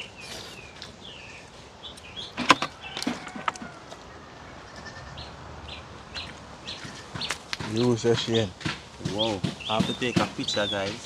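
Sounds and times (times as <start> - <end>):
sharp knocks: 6.7 - 11.0.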